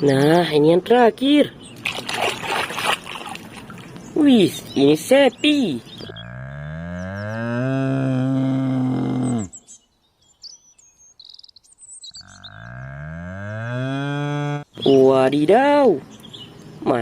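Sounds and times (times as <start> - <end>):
small birds chirping: 0.0 - 8.1, 9.0 - 12.9, 14.5 - 17.0
cow mooing: 6.0 - 9.6, 12.2 - 14.7.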